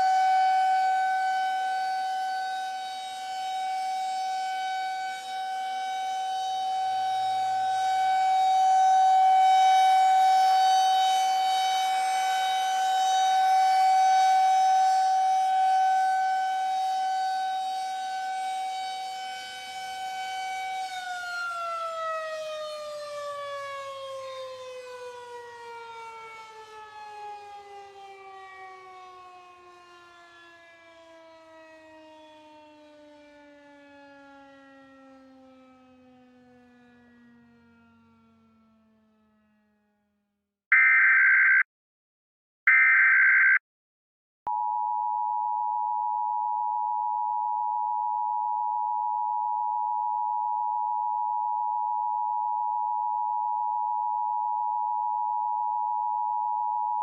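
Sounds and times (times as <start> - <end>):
air-raid siren: 0.0 - 41.6, 42.7 - 43.6.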